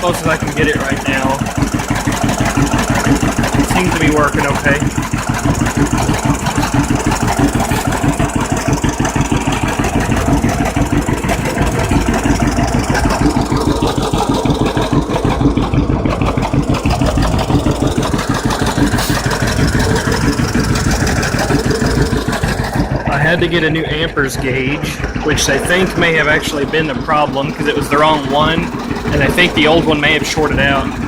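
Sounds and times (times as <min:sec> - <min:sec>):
tractor engine idling: 0:00.0 - 0:31.0.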